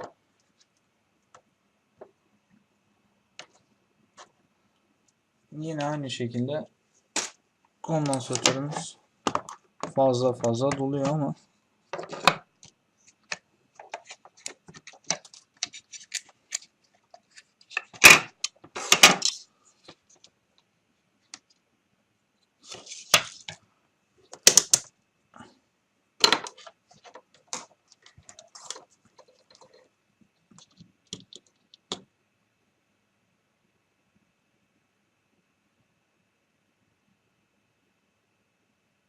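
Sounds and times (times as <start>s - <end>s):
objects handled on a workbench: 7.1s - 11.3s, 11.9s - 20.4s, 22.6s - 23.6s, 26.2s - 32.1s.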